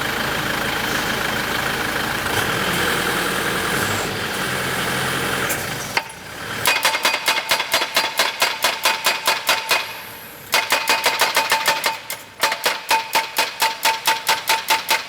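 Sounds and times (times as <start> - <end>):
pile driver engine running: 0.0 - 7.5.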